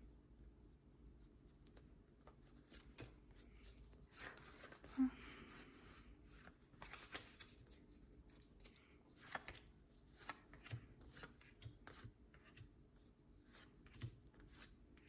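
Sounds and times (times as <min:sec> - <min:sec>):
trading cards rustling: 0:06.7 - 0:09.6.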